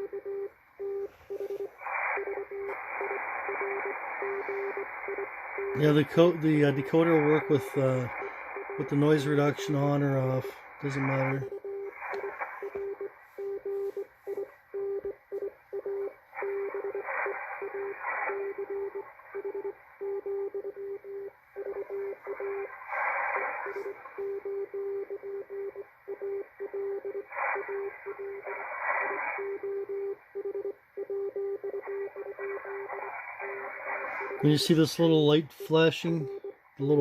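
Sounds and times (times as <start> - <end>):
radio band hiss: 1.0 - 14.7, 16.3 - 19.9, 21.6 - 24.4, 26.4 - 30.0, 31.6 - 37.0
static surges: 1.0 - 37.0
morse code tone: 5.6 - 17.0, 29.4 - 37.0.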